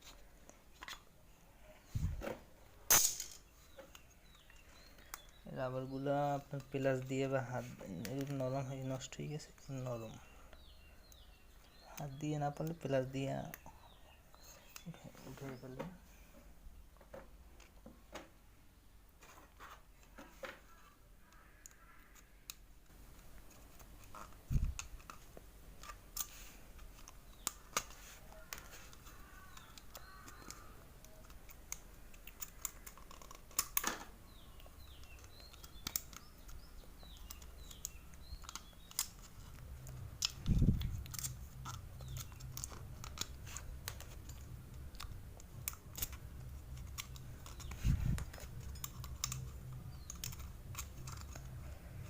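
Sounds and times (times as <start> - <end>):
faint bird chirps: 20.6 - 22.5, 27.3 - 31.3
pliers clicking on metal: 34.6 - 52.0.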